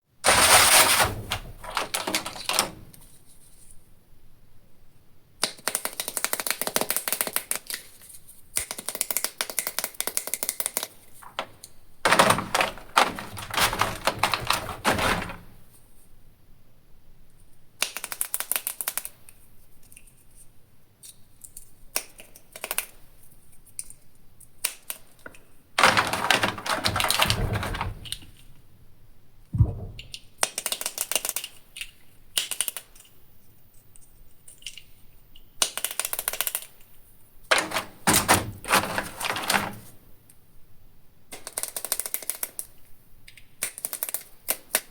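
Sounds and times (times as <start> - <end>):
plastic packaging crinkling: 0.2 - 3.0, 11.2 - 15.6, 37.5 - 40.0.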